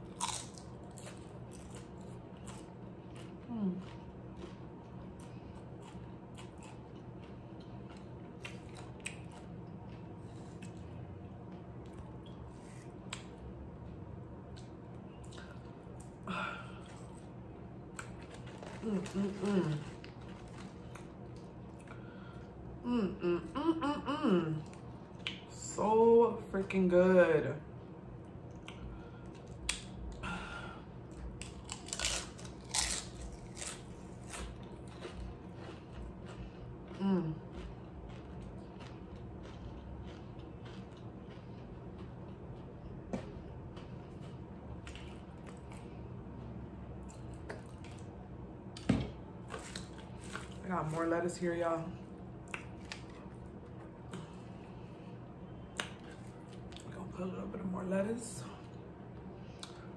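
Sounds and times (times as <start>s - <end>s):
chewing crunchy chips: 0.0s - 22.5s, 31.1s - 43.0s, 43.6s - 46.1s, 46.9s - 51.1s, 52.4s - 54.7s
low hum: 0.0s - 59.9s.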